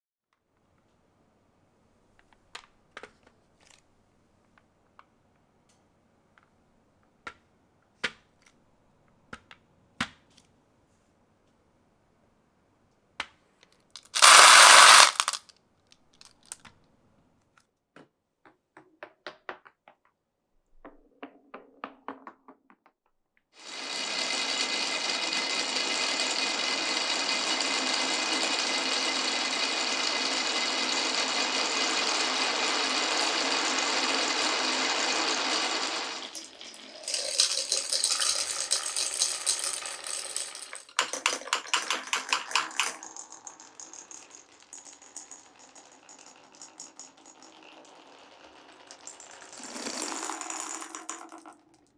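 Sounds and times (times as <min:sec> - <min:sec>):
marbles clacking on wooden run: 0:14.0 - 0:15.4, 0:24.0 - 0:51.8
small electric motor running: 0:14.2 - 0:15.4, 0:23.6 - 0:36.2.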